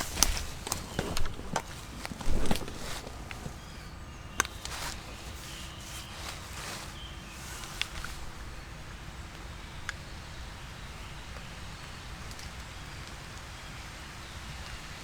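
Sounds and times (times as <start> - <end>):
footsteps on forest floor: 0.0 - 8.6.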